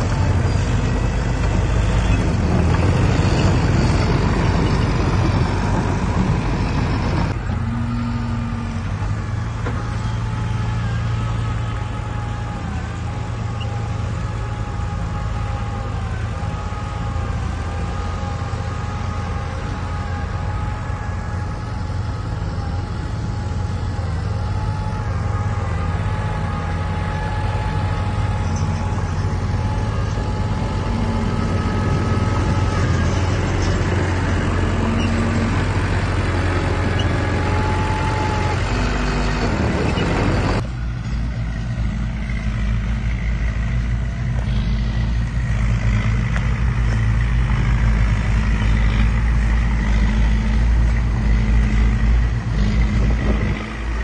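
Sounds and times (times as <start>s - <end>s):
heavy diesel engines droning: 0.0s - 54.0s
steady machine whine: 0.0s - 54.0s.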